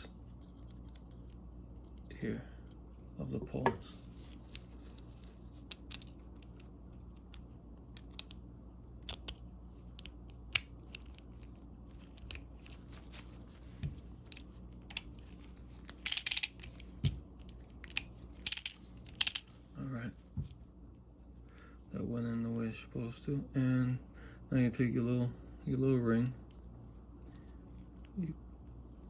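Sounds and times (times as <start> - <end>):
small steel parts clicking: 15.9 - 16.9, 17.9 - 19.5.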